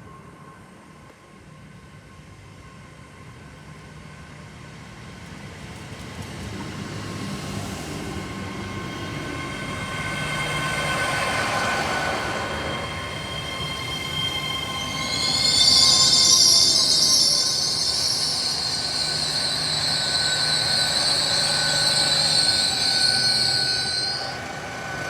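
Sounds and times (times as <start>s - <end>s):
train rumble: 0.0s - 25.0s
high ringing tones: 8.9s - 25.0s.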